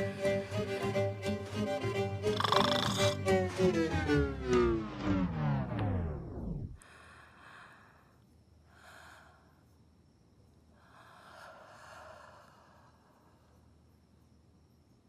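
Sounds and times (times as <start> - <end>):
man snoring softly: 2.2 - 3.2
loud falling tone: 3.4 - 6.8.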